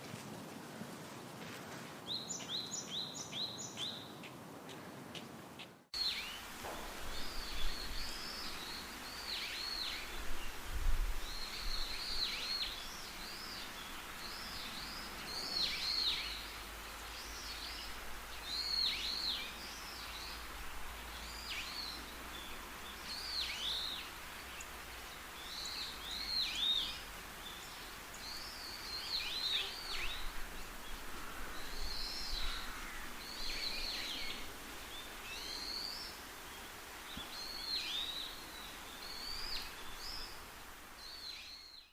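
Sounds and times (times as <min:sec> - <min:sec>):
steady background hiss: 0:00.0 - 0:41.9
high falling bird calls: 0:21.1 - 0:41.9.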